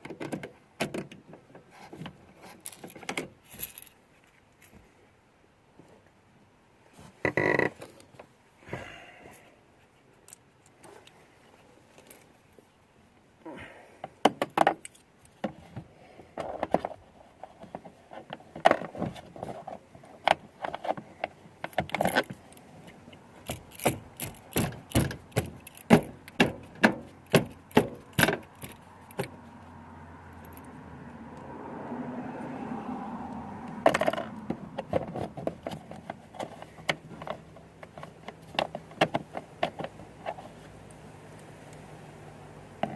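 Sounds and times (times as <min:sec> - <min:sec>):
low steady noise: 0:00.0 - 0:42.9
metal tools clicking and rattling: 0:23.4 - 0:29.2.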